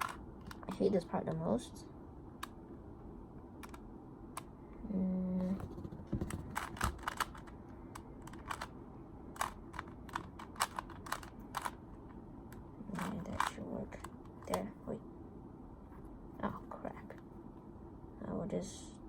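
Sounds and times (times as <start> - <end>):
puzzle cube plastic clicks: 0.0 - 1.4, 6.2 - 14.7
person humming: 4.8 - 5.6.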